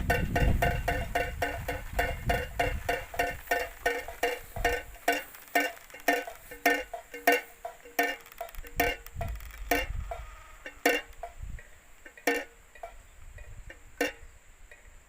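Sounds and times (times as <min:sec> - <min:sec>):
windmill bird scarer knocking: 0:00.0 - 0:15.0.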